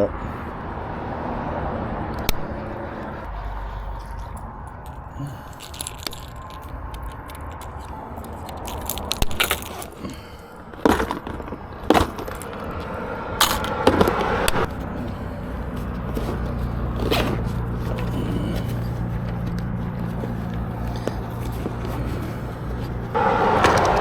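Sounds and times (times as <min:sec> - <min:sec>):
road traffic rumble: 0:00.0 - 0:24.0
fishing tackle clicks and rattles: 0:04.0 - 0:14.9.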